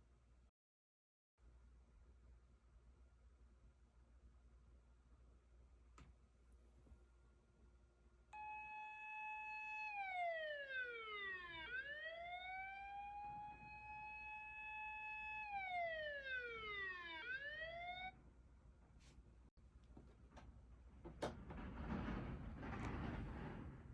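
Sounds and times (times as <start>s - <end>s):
fire engine siren wailing: 8.4s - 18.2s.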